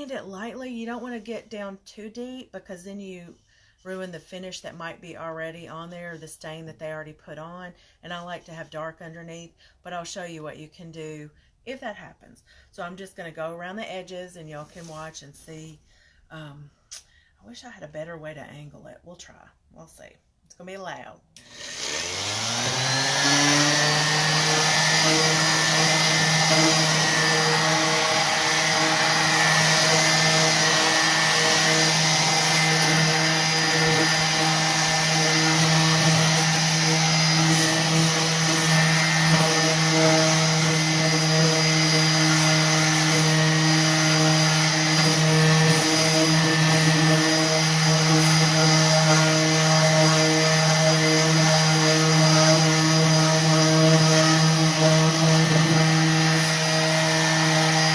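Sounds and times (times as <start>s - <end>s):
orbital sander running: 21.4s - 57.9s.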